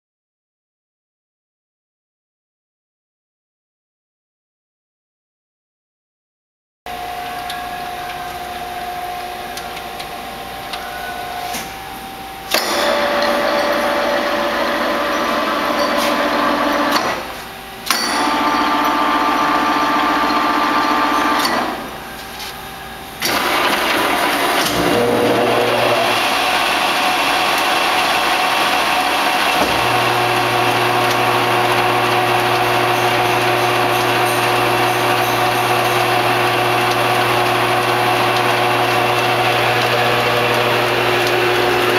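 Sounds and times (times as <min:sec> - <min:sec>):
motor spinning up whine: 0:23.2 - 0:41.9
electric motor hum: 0:23.4 - 0:41.9.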